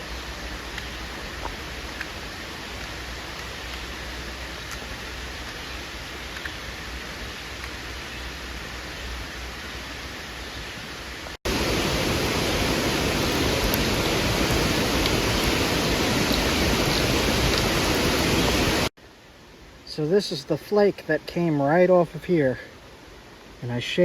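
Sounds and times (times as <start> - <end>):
steady rushing noise: 0.0 - 18.9.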